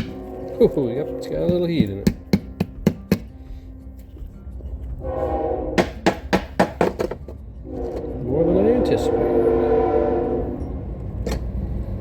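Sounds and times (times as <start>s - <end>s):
sharp knocks on sand mold: 1.5s - 3.3s, 5.8s - 7.2s.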